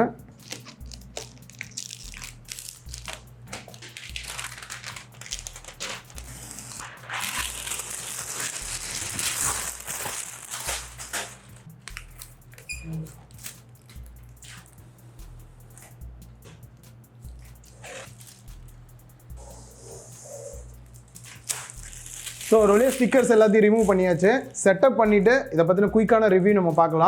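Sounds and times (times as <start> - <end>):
plastic film peeling and crinkling: 0.4 - 14.8, 17.4 - 18.7, 20.0 - 24.6.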